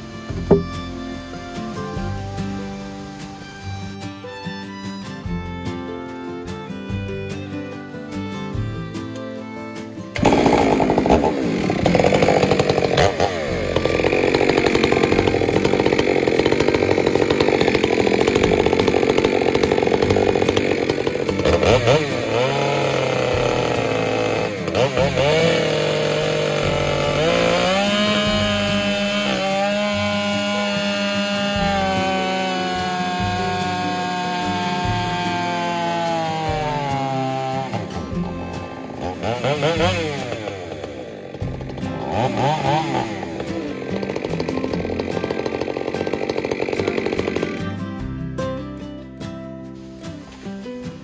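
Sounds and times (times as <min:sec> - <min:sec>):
chainsaw engine revving: 0:00.0 - 0:04.4, 0:08.6 - 0:48.1.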